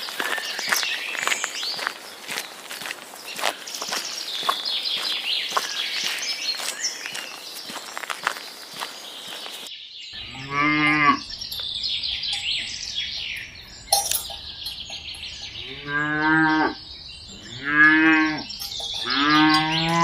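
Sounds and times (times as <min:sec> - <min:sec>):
high chirping: 0:03.8 - 0:20.0
cow mooing: 0:10.2 - 0:11.4, 0:15.4 - 0:20.0.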